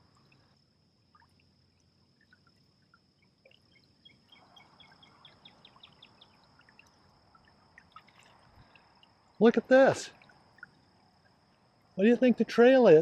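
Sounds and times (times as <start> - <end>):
bird chirps: 3.6 - 8.1.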